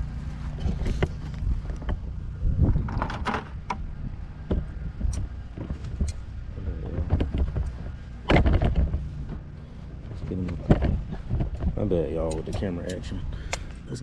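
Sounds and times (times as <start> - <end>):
wind rumbling on microphone: 0.0 - 13.4
camera handling knocks and rustles: 0.5 - 2.0, 6.9 - 9.4, 10.4 - 11.8.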